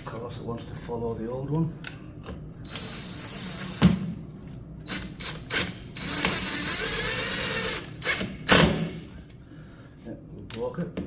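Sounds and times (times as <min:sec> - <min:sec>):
power driver driving screw: 0:02.6 - 0:03.9, 0:04.8 - 0:08.9.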